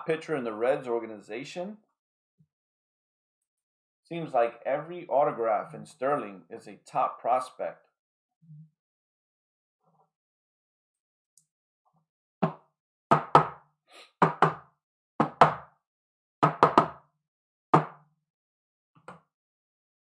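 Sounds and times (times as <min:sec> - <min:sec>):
sharp knocks on tabletop: 0:12.4 - 0:13.6, 0:16.4 - 0:17.0, 0:17.8 - 0:18.0.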